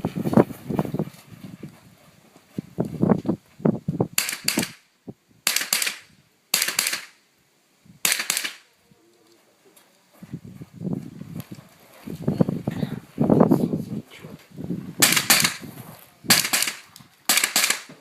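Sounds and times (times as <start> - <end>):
rifle shots with echo: 5.4 - 7.2, 8.0 - 8.7, 15.0 - 15.6, 16.3 - 17.9.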